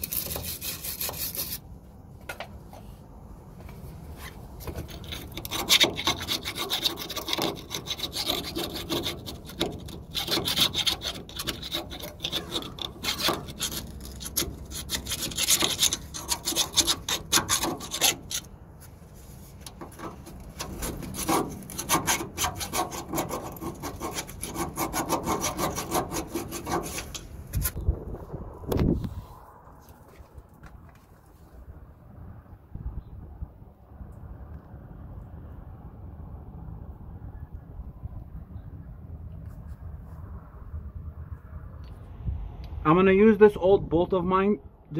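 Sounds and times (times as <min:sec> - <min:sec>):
metal scraping by hand: 0:00.0 - 0:03.0, 0:04.1 - 0:27.8.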